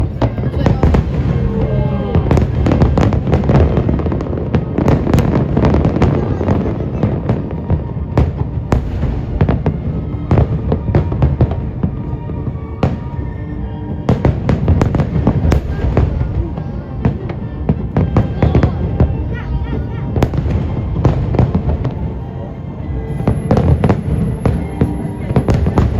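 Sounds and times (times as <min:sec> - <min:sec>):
low rumble: 0:00.0 - 0:05.5
fireworks bangs and crackles: 0:00.0 - 0:25.9
music: 0:00.0 - 0:25.9.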